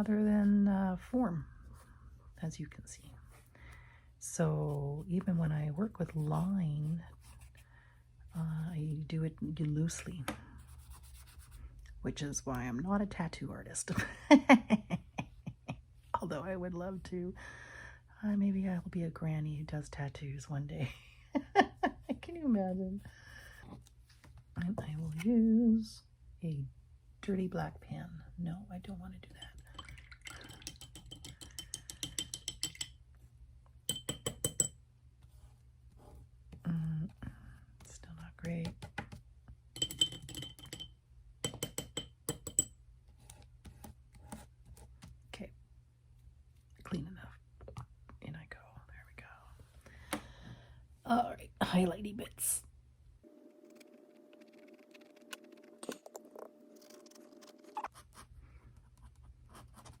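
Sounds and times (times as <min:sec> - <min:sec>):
faint steady hum: 0:00.0 - 1:00.0
brush clinking against glass jar: 0:29.4 - 0:32.9, 0:33.9 - 0:34.8, 0:39.8 - 0:42.7
paintbrush tapping and scratching paper: 0:37.8 - 0:40.6.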